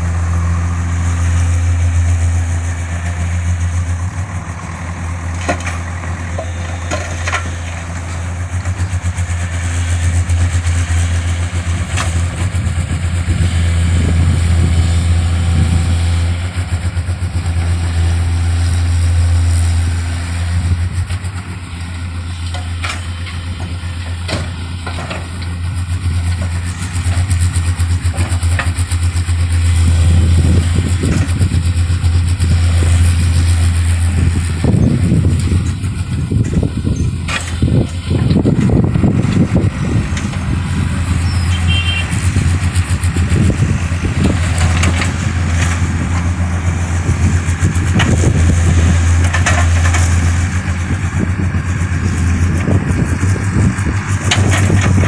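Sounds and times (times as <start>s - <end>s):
excavator diesel engine drone: 0.0s - 55.0s
sharp knocks and clanks: 5.3s - 9.2s.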